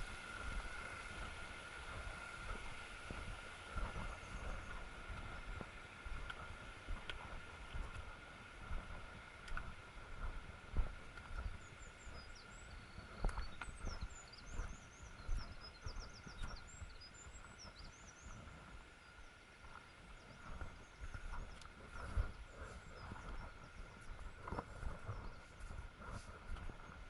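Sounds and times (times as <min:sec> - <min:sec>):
footsteps on a trail: 0:00.0 - 0:27.0
songbird chirping and trilling: 0:11.2 - 0:27.0.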